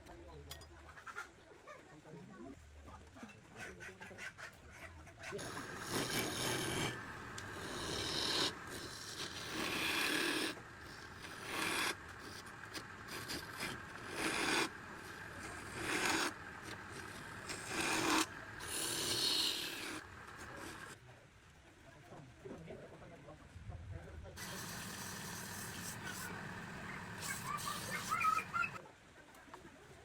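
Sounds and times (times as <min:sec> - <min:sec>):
hand tool rasping on wood: 0:05.4 - 0:21.0.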